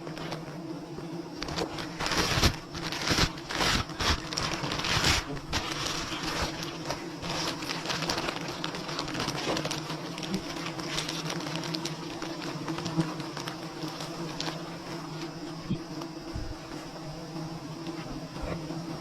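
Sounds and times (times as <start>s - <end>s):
bees buzzing: 0.0s - 19.0s
loud rustling and crackling: 1.4s - 15.3s.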